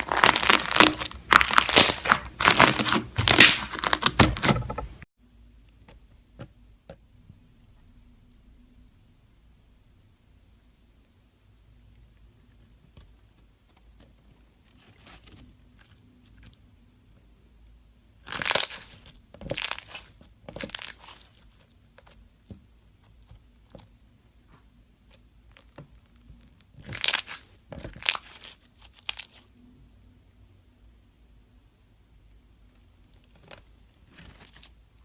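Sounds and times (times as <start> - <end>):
slime squishing by hand: 0.0 - 5.0, 18.1 - 29.6, 32.6 - 35.0.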